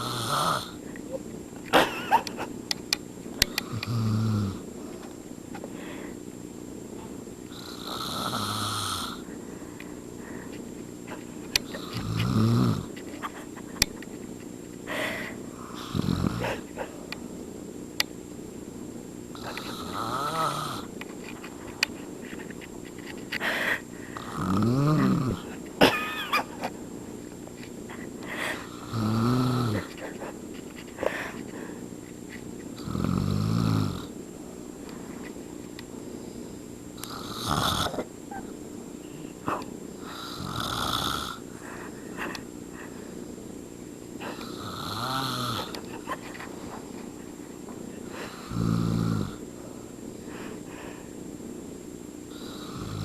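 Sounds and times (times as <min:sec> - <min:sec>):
man snoring: 0:00.0 - 0:00.8, 0:03.6 - 0:04.6, 0:07.5 - 0:09.3, 0:11.7 - 0:12.9, 0:15.5 - 0:16.7, 0:19.3 - 0:20.9, 0:24.2 - 0:25.5, 0:28.6 - 0:29.9, 0:32.8 - 0:34.1, 0:37.0 - 0:38.1, 0:40.0 - 0:41.4, 0:44.2 - 0:45.8, 0:48.2 - 0:49.5, 0:52.3 - 0:53.0.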